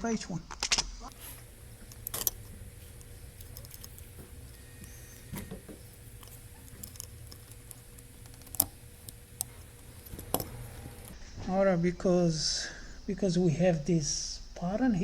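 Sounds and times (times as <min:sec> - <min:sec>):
low steady hum: 0:00.0 - 0:15.0
small tools clicking and tapping: 0:01.1 - 0:11.2.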